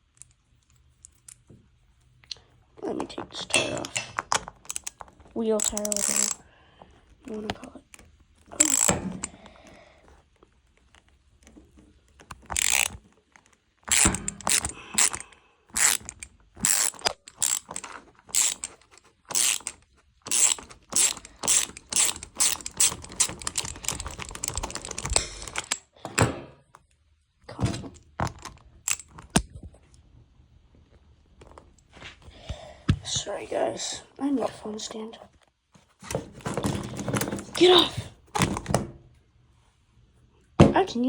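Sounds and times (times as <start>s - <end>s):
plastic and metal clicks and rattles: 2.2s - 26.9s, 27.5s - 29.8s.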